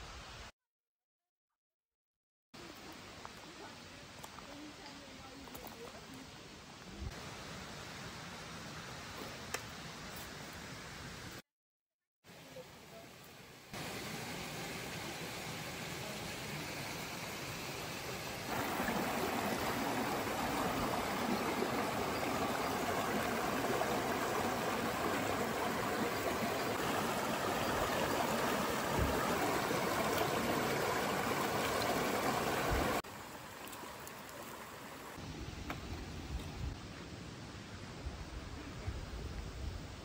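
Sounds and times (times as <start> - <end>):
stream water rushing: 13.4 - 35.4.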